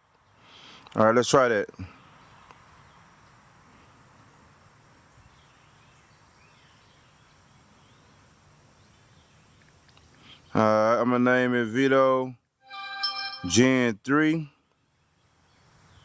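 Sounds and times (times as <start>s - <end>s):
faint background hiss: 0.0s - 12.4s
high-pitched whine: 12.7s - 13.9s.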